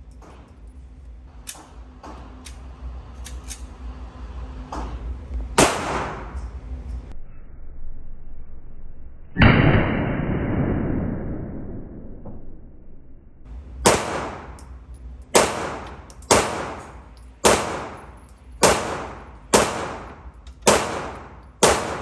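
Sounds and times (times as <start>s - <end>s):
pistol shots echoing: 13.8s - 14.7s, 15.3s - 22.0s.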